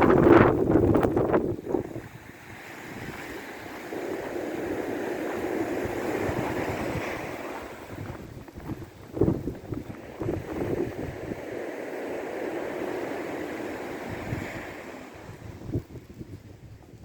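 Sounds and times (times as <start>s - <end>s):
sea surf washing onto shore: 0.0s - 17.0s
wind buffeting microphone: 0.0s - 17.0s.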